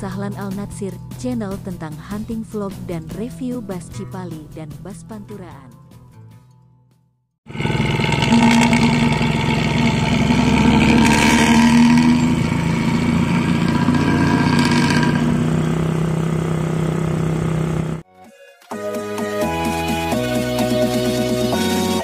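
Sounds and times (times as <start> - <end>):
bus engine revving loud exhaust: 7.5 - 18.0.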